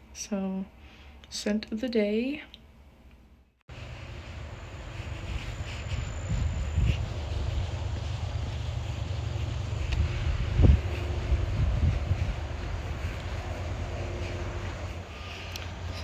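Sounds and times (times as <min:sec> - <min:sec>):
steady low rumble: 0:03.7 - 0:16.0
wind-like hiss: 0:03.7 - 0:16.0.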